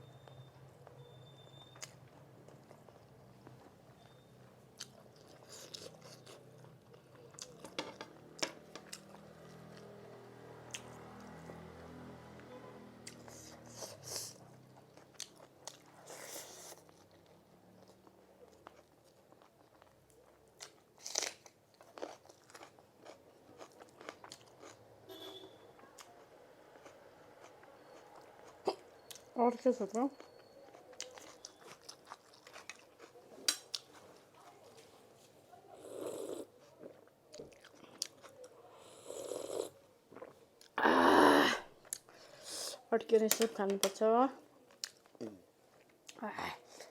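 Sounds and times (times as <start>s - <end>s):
chewing: 0.2s - 10.0s, 13.0s - 24.9s, 25.8s - 40.8s, 44.7s - 46.9s
crisp crunching and chewing: 4.8s - 7.8s, 14.8s - 24.8s, 30.1s - 34.2s, 36.8s - 38.6s.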